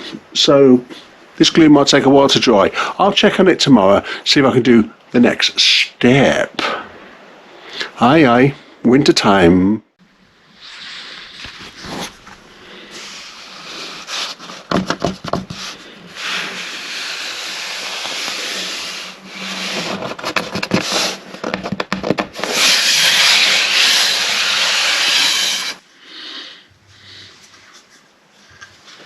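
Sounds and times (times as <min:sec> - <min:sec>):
wood being sanded: 0:13.0 - 0:21.3, 0:22.4 - 0:25.8
knocks and clatter: 0:19.8 - 0:22.4.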